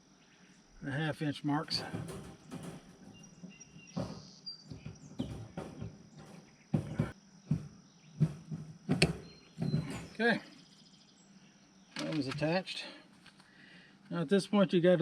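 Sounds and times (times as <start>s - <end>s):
wire cage clips clicking and clanking: 1.7s - 6.4s.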